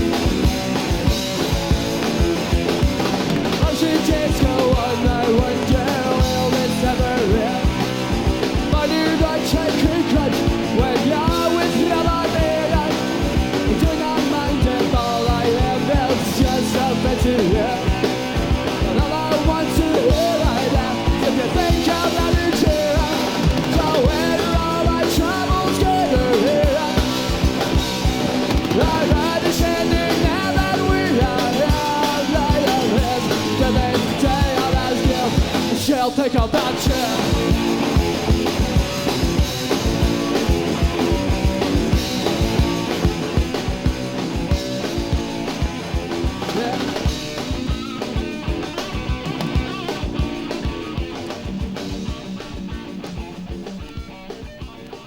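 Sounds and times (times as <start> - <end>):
drum beat: 0.0 - 55.0
punk rock band playing: 0.0 - 55.0
person singing: 3.5 - 7.7, 8.7 - 18.0, 18.9 - 27.3, 28.7 - 37.8, 46.4 - 47.2.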